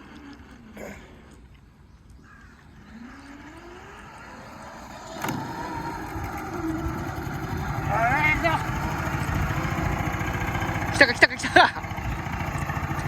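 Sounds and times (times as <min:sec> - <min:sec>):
mower engine running: 0:02.5 - 0:13.0
knock of engine jolted over: 0:05.2 - 0:05.8.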